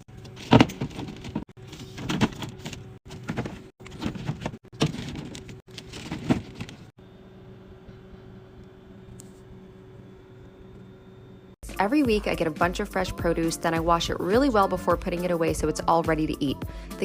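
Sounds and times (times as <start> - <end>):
steady low hum: 0.0 - 13.4
items clattering when set down: 0.2 - 6.9.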